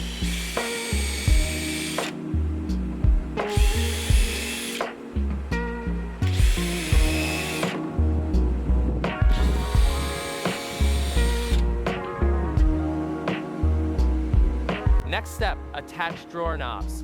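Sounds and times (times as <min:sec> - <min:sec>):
power drill whining: 0:00.0 - 0:02.2, 0:03.4 - 0:05.2, 0:06.2 - 0:07.9, 0:09.3 - 0:11.8
music with beat and bass: 0:00.0 - 0:16.2.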